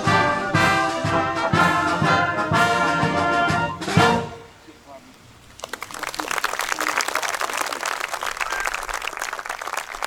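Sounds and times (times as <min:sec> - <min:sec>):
audience applauding: 0:05.6 - 0:10.0.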